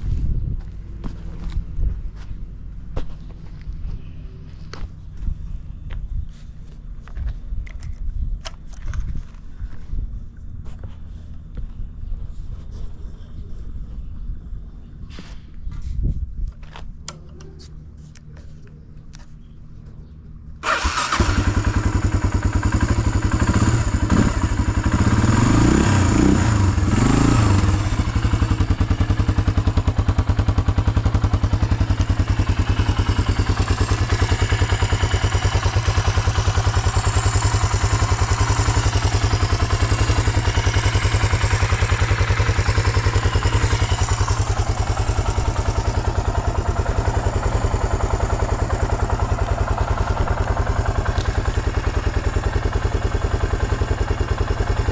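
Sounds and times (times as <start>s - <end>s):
motorcycle engine revving and idling: 20.6s - 54.9s.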